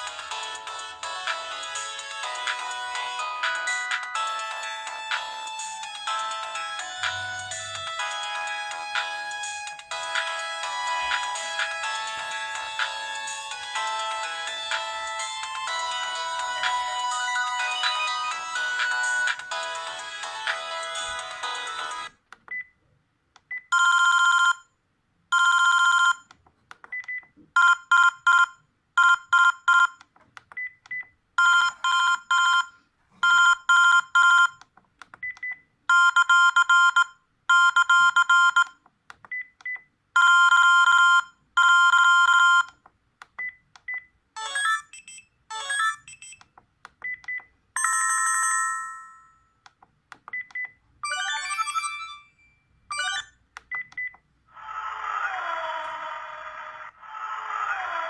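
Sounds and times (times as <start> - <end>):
electronic phone ring tones: 23.7 - 24.6, 44.4 - 46.4, 47.8 - 49.5, 51.0 - 53.4.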